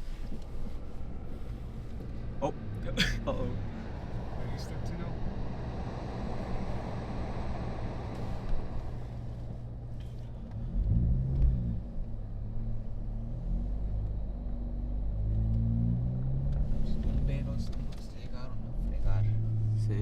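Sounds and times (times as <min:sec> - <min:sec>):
car engine revving: 0:10.2 - 0:20.0.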